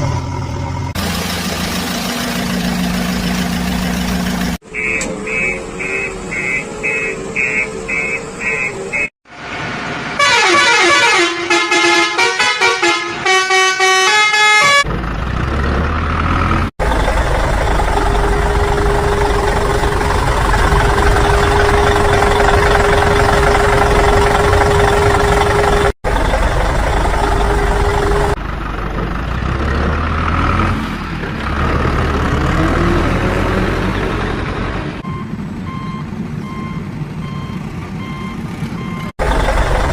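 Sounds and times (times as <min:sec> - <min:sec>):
rumbling engine: 0:00.0 - 0:13.3, 0:14.4 - 0:39.9
reversing beeps: 0:04.7 - 0:09.1, 0:35.0 - 0:39.1
horn note tune: 0:10.2 - 0:14.8.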